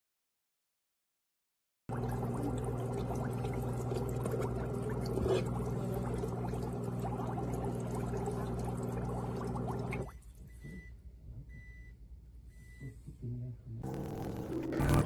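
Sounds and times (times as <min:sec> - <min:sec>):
motor hum: 0:01.9 - 0:10.1, 0:13.8 - 0:15.0
water bubbling and gurgling: 0:01.9 - 0:10.1.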